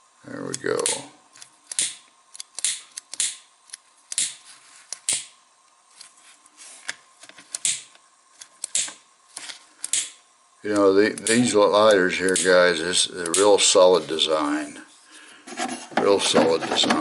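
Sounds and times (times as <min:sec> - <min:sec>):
gas hissing: 0:08.6 - 0:17.0.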